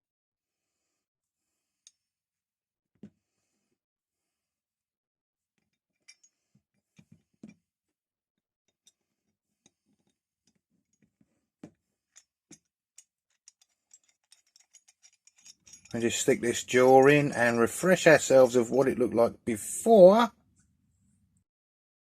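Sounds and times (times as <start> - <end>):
metal tool parts clinking: 5.6 - 6.4, 12.1 - 16.3.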